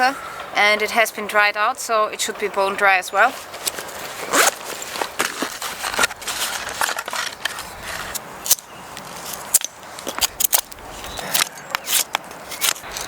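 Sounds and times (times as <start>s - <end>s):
dry wood crackling and snapping: 3.5s - 13.0s.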